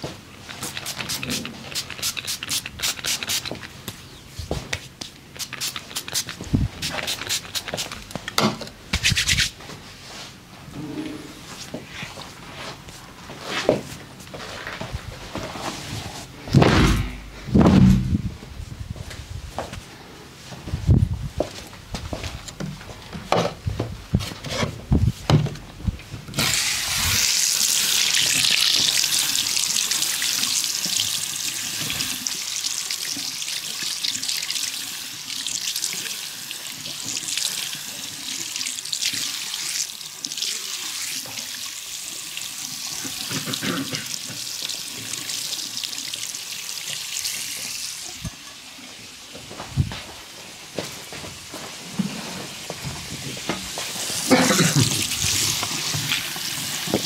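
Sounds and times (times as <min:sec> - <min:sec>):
sharp knocks: 0:16.5 - 0:18.3
water running from a tap: 0:26.4 - 0:48.2, 0:54.3 - 0:57.0.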